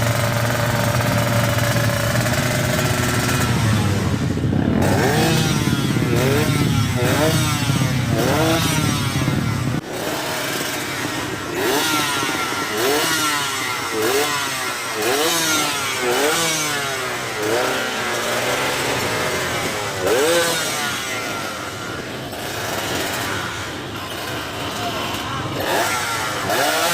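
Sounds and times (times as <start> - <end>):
motorcycle engine revving: 0.0 - 26.9.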